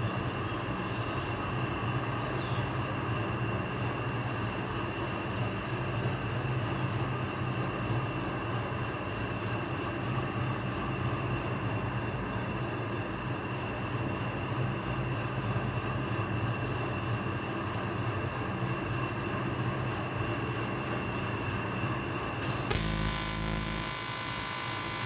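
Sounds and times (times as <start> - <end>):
welding arc buzzing: 22.4 - 25.0.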